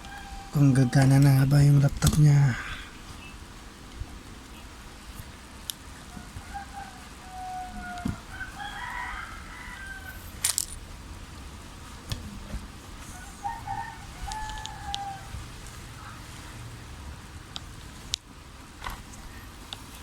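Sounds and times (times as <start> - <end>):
rooster crowing: 0.0 - 1.4, 6.1 - 10.4, 13.0 - 16.2.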